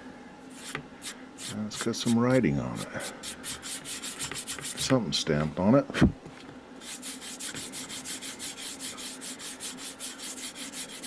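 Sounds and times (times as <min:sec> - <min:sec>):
faint steady hum: 0:00.0 - 0:11.0
rapid rubbing on dusty panel: 0:03.1 - 0:04.9, 0:06.8 - 0:11.0.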